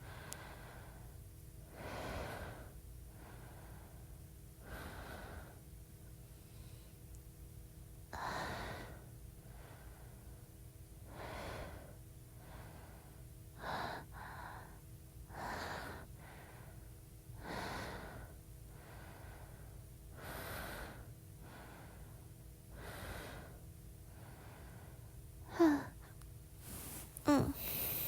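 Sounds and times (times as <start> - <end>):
faint steady hum: 0.0 - 28.0
woman breathing: 17.4 - 28.0.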